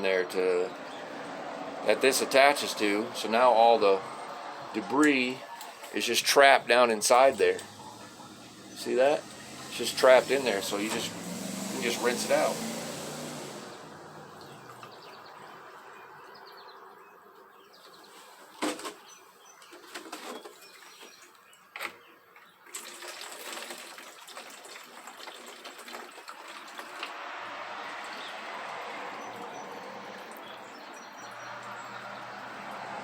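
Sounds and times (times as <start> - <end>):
water spray hissing: 7.1 - 14.6.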